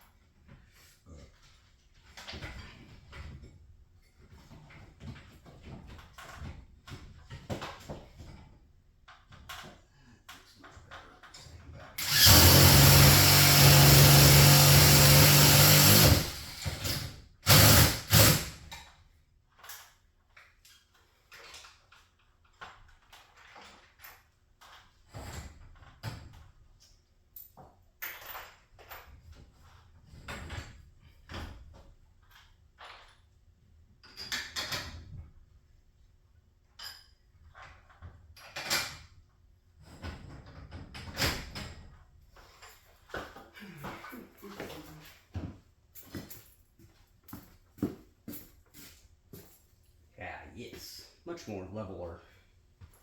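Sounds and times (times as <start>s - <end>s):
power drill running: 12.0s - 18.6s
light knocks and tool clatter: 39.8s - 50.0s.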